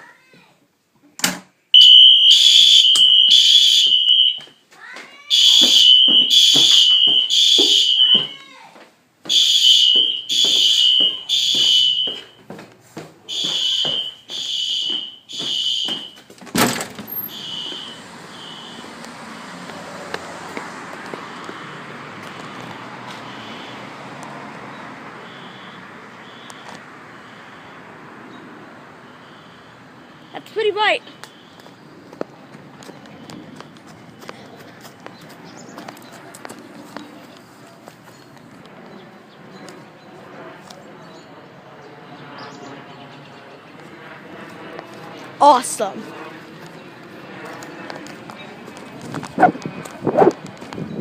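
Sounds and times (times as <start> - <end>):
fire alarm horn pulses: 1.8 - 4.5, 5.3 - 8.3, 9.3 - 12.4, 13.3 - 16.3, 17.2 - 18.9, 23.2 - 23.9, 25.2 - 27.9, 29.0 - 30.4
steady outdoor hiss: 16.3 - 51.0
door shutting thump: 16.4 - 17.2.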